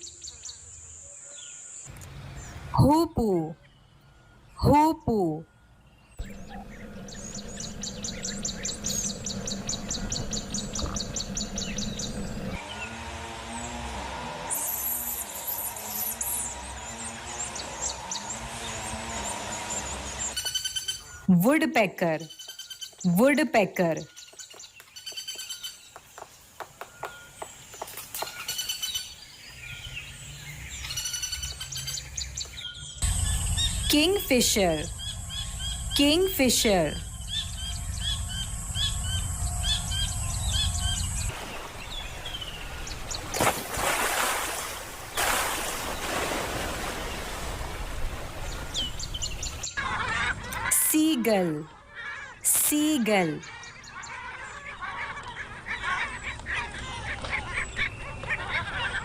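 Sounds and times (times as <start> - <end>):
birds calling: 0.0 - 14.0, 14.6 - 21.3, 21.9 - 59.0
bird chirping: 5.5 - 12.8, 22.2 - 43.5
steady low hum: 5.5 - 14.4, 33.0 - 41.3
woodpecker drumming: 6.2 - 12.5.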